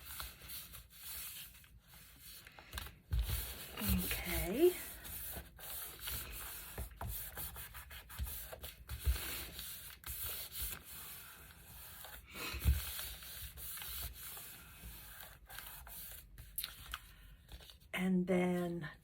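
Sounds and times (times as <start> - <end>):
paper rubbing and sliding: 0.0 - 17.8.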